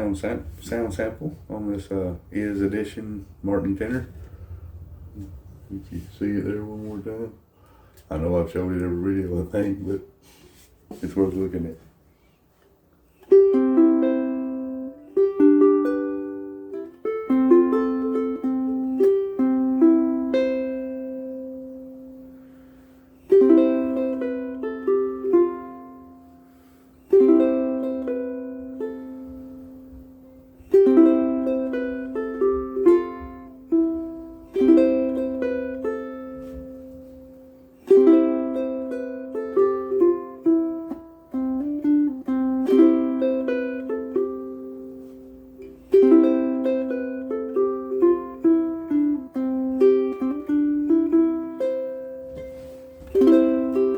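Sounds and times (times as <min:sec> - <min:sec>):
ukulele playing chords and melody: 0:13.0 - 0:53.9.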